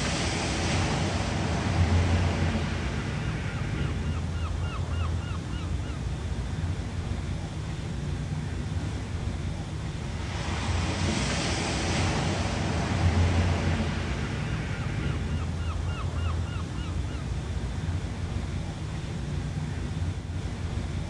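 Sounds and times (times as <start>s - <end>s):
ocean wave washing in: 0.0s - 4.6s, 8.9s - 16.6s
low rumble of water: 0.0s - 21.0s.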